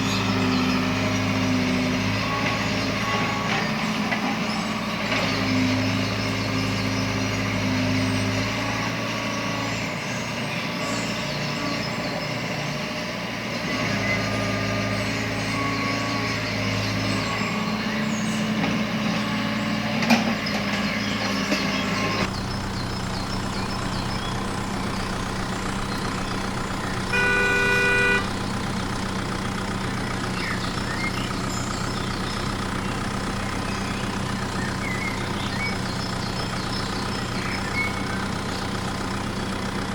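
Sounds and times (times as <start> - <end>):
truck engine running: 0.0 - 39.9
truck horn: 0.8 - 3.9, 26.2 - 28.6.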